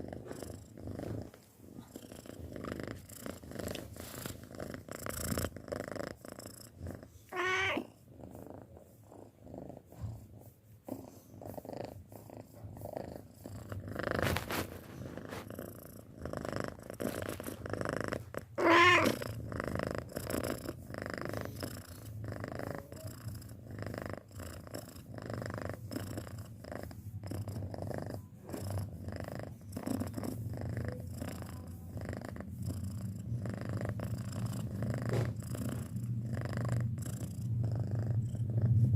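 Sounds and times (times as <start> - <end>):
cat purring: 0.0 - 38.9
cat wavering call: 7.3 - 7.9.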